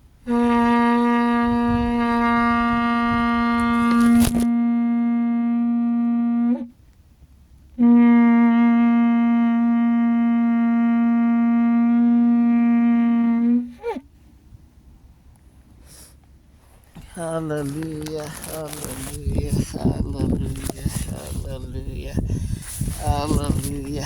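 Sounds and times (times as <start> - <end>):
shofar blasts: 0.2 - 6.7, 7.8 - 14.0, 17.5 - 24.0.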